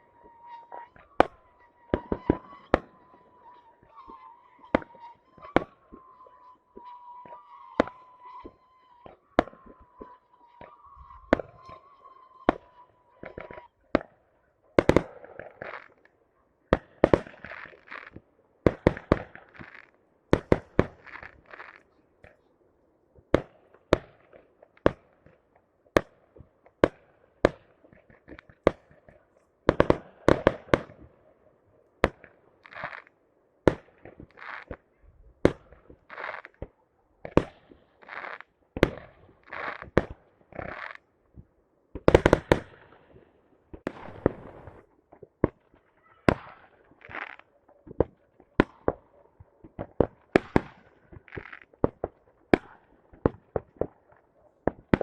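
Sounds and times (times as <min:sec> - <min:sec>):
fireworks crackling: 0:00.0 - 0:14.0, 0:17.1 - 0:21.9, 0:32.2 - 0:41.1, 0:42.0 - 0:55.0
fireworks bangs and pops: 0:00.0 - 0:22.4, 0:23.2 - 0:31.2, 0:32.0 - 0:55.0.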